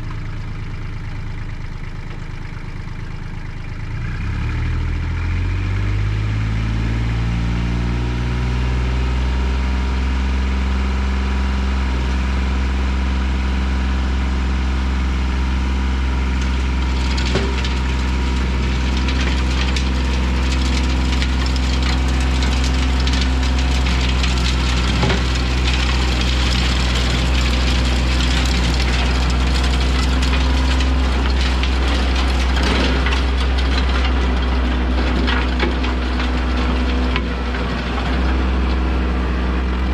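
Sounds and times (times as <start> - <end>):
engine running steadily: 0.0 - 39.9
rough crackling with clicks: 16.3 - 38.8.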